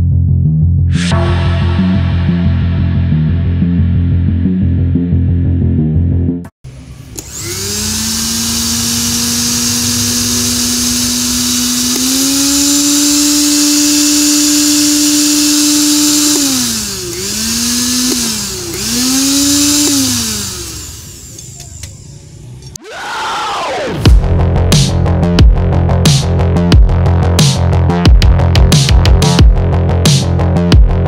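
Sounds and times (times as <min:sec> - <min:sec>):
blender motor running: 0:06.7 - 0:22.0.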